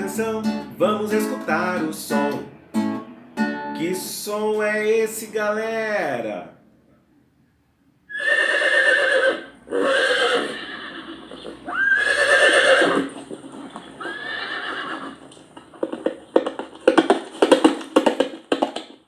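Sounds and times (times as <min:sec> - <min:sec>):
horse whinnying: 0:08.1 - 0:15.5
hoofbeats: 0:11.0 - 0:19.0.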